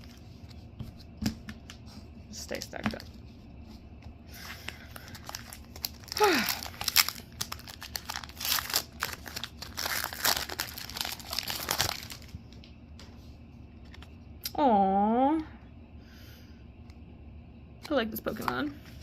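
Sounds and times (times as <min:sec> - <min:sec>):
foil wrapper crinkling and tearing: 0:04.4 - 0:12.4.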